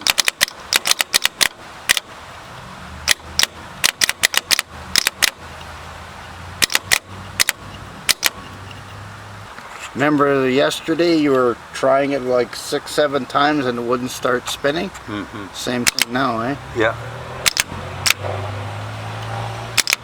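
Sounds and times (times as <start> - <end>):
starter solenoid clicking: 0.0 - 2.1, 3.0 - 5.4, 6.6 - 8.4, 15.8 - 16.3, 17.4 - 18.3, 19.2 - 20.0.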